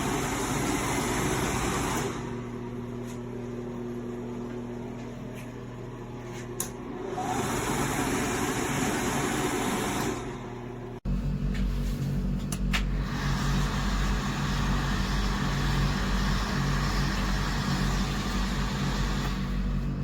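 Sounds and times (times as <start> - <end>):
hand dryer running: 0.0 - 3.2, 6.9 - 10.7, 11.5 - 20.0.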